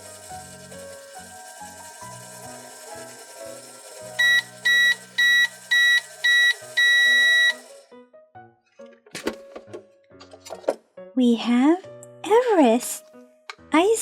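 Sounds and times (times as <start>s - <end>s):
microwave beeping: 0.0s - 7.9s
light background music: 0.0s - 14.0s.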